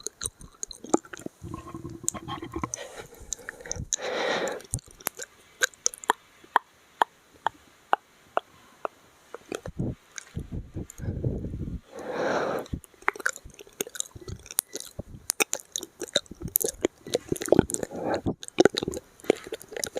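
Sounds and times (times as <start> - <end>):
wet mouth clicks: 0.0 - 11.1, 11.9 - 19.9
low muffled mouth noises: 0.0 - 19.9
breathy rush: 1.4 - 4.8, 10.9 - 12.8.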